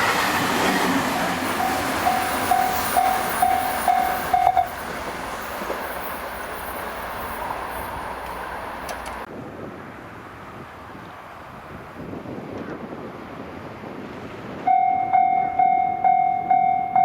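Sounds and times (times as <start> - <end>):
train rumble: 0.0 - 12.0
level crossing electronic bell: 14.7 - 17.0.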